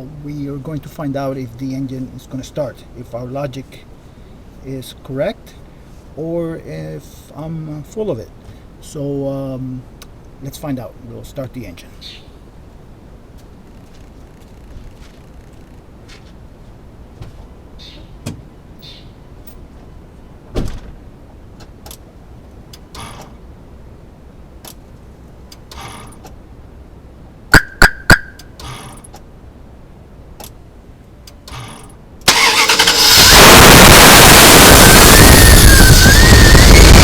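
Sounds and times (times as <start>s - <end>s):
car engine starting: 31.4s - 37.0s
fuel pump whirring: 32.2s - 37.0s.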